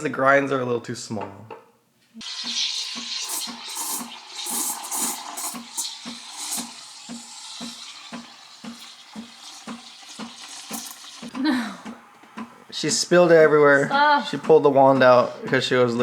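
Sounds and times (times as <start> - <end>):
steam wand hissing: 2.2 - 11.3
pump pulsing: 2.9 - 12.1.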